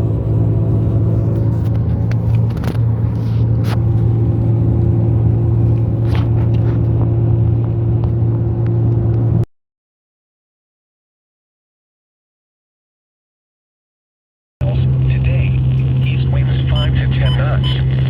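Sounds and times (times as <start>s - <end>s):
car engine and road rumble: 0.0s - 9.5s, 14.6s - 18.0s
constant hum: 0.0s - 9.5s, 14.6s - 18.0s.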